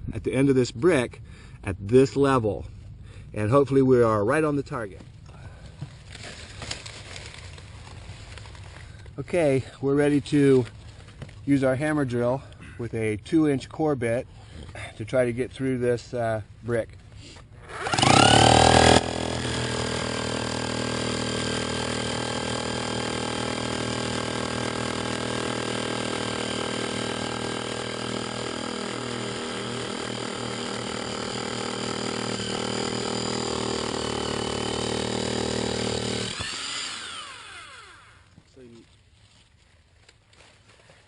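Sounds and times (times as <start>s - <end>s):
hammer drill boring through brick: 17.6s - 38.3s.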